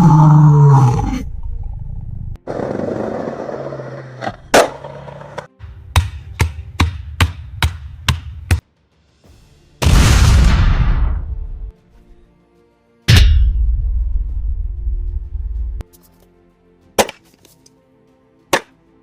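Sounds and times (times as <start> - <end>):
series of sharp strikes: 13.1 - 14.4
sharp hits: 13.1 - 15.3.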